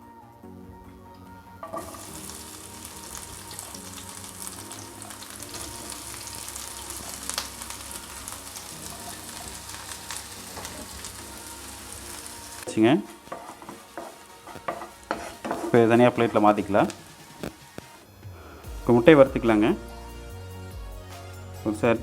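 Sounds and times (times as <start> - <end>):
onions sizzling in hot oil: 1.6 - 19.1.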